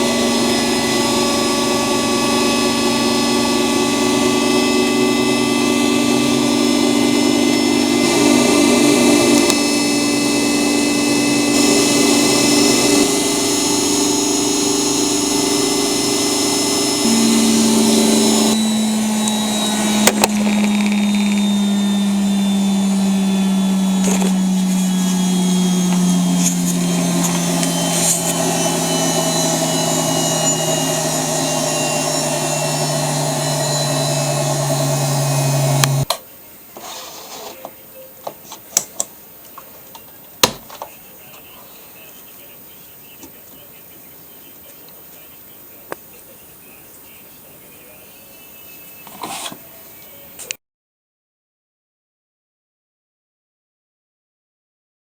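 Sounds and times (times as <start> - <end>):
washing machine motor hum: 0.0 - 36.1.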